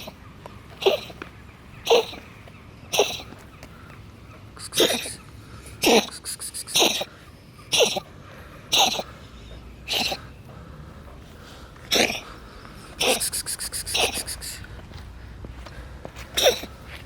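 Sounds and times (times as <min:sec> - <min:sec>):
cat coughing: 0:04.6 - 0:05.2, 0:13.0 - 0:14.6.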